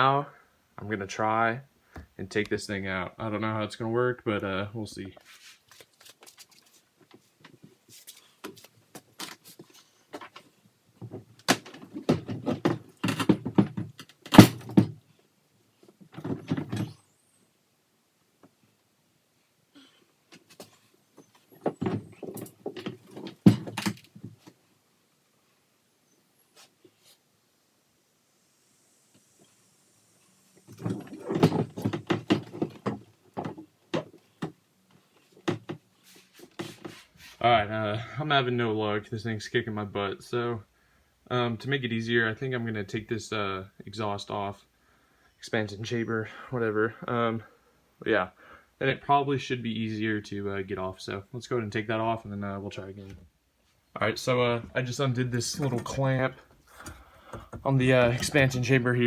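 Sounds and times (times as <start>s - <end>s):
engine clunking against mounts: 21.6s - 24.1s, 55.4s - 56.2s, 56.8s - 58.8s.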